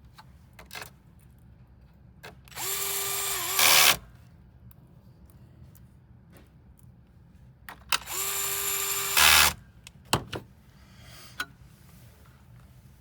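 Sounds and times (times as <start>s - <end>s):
electric screwdriver whining: 2.5s - 4.0s, 8.0s - 9.6s.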